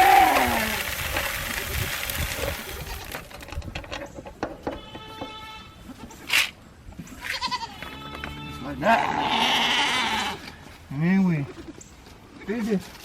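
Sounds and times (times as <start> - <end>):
goats or sheep bleating: 0.0 - 0.8, 4.7 - 6.0, 7.2 - 10.5
grain rattling into bucket: 0.0 - 3.8.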